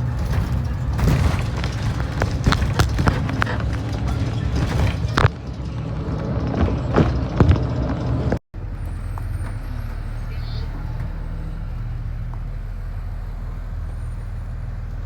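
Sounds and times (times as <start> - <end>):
clanks and knocks: 0.0 - 8.4
heavy traffic rumble: 0.0 - 15.0.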